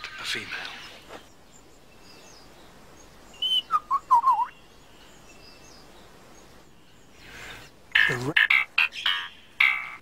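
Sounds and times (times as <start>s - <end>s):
lyrebird whistling and warbling: 3.4s - 4.6s.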